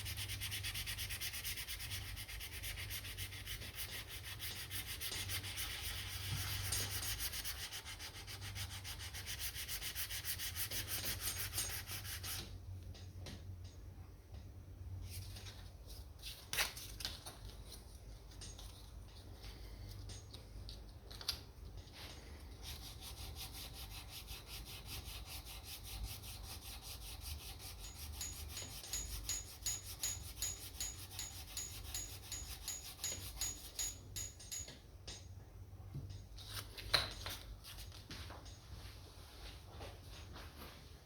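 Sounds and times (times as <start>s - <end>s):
sanding strokes on guitar finish: 0.0s - 12.4s, 22.7s - 30.0s.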